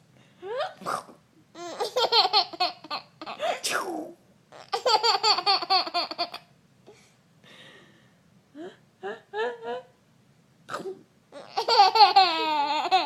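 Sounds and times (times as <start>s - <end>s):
baby giggling: 1.6s - 3.5s, 4.6s - 6.5s, 11.4s - 13.0s
baby squealing: 11.4s - 13.0s.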